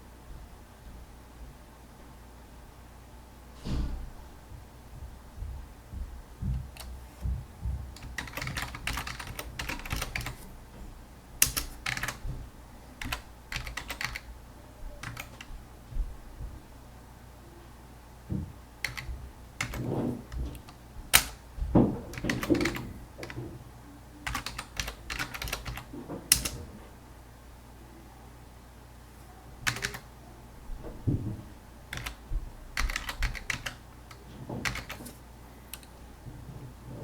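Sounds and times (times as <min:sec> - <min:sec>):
computer keyboard typing: 0:07.9 - 0:10.4, 0:11.4 - 0:12.2, 0:13.0 - 0:14.3, 0:15.0 - 0:15.5, 0:18.8 - 0:21.4, 0:22.1 - 0:23.4, 0:24.2 - 0:26.6, 0:29.6 - 0:30.1, 0:31.9 - 0:32.2, 0:32.8 - 0:35.9.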